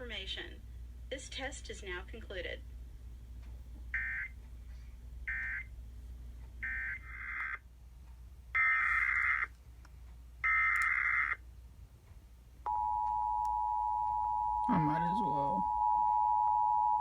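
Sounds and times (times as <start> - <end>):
harsh screeching data bursts: 8.6 - 9.5
steady dual tone attention signal: 12.7 - 17.0.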